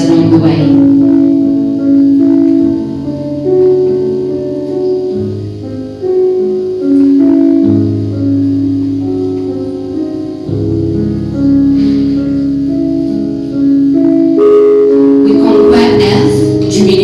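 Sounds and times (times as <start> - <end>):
deep piano bass notes: 0.0 - 17.0
piano playing slow chords: 0.0 - 17.0.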